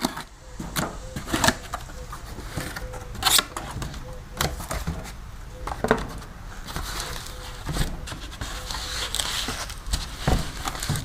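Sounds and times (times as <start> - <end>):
knocks and clicks of packaging: 2.5 - 11.0
packing material crinkling: 6.2 - 11.0.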